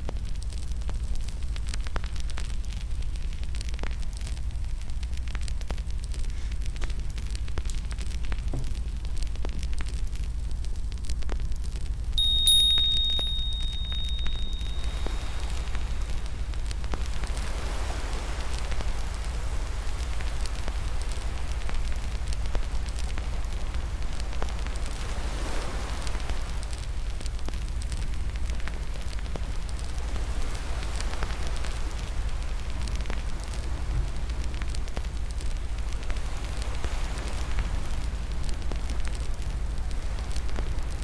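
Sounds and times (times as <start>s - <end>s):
sharp pops and snaps: 0.0s - 12.2s
fireplace fire crackling: 0.0s - 41.0s.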